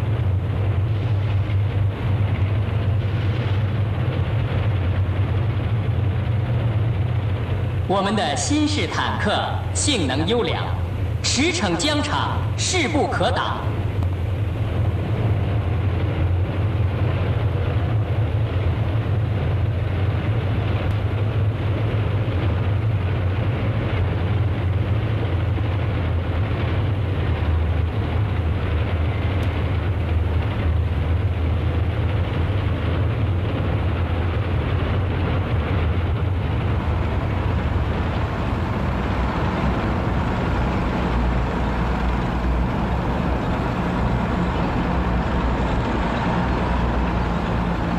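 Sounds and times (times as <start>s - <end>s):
heavy engines droning: 0.0s - 47.9s
tank running gear noise: 19.8s - 47.9s.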